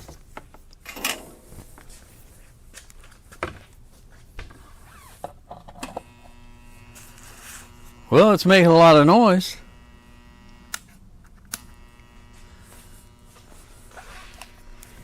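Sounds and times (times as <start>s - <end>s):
transformer mains hum: 5.8s - 15.0s.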